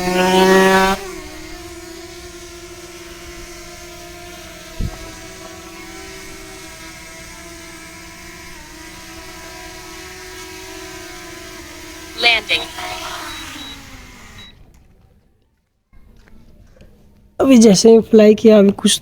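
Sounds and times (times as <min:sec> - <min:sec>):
drone propellers whirring: 0:00.0 - 0:14.7.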